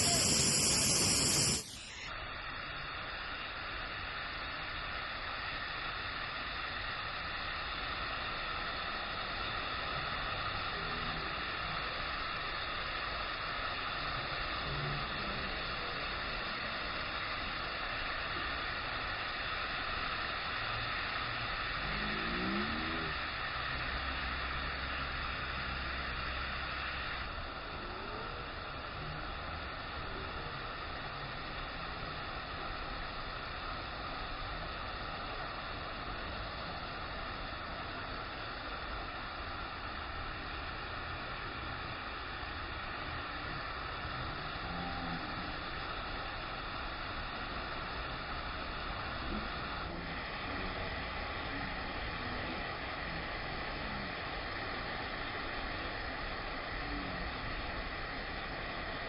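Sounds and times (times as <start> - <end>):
waterfall rushing: 0.0 - 2.1.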